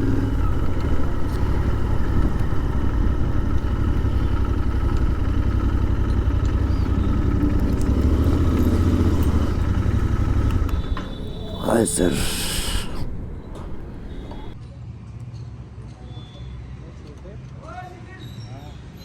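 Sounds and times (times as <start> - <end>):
motorcycle engine idling: 0.0 - 14.6.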